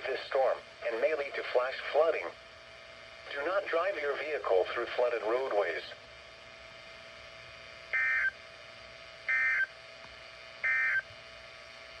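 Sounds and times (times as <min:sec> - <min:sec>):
digital data tone bursts: 0:08.0 - 0:08.3, 0:09.3 - 0:09.7, 0:10.6 - 0:11.0.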